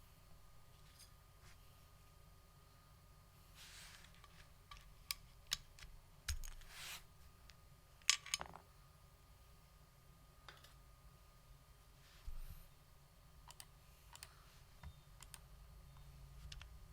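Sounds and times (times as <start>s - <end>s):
mechanical keyboard clicks: 13.5s - 14.3s.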